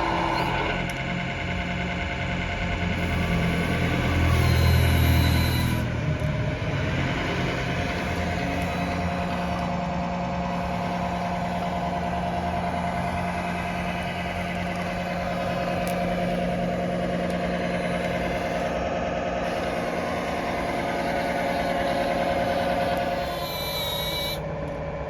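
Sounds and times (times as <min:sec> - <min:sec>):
simulated excavator engine idling: 0:00.0 - 0:25.0.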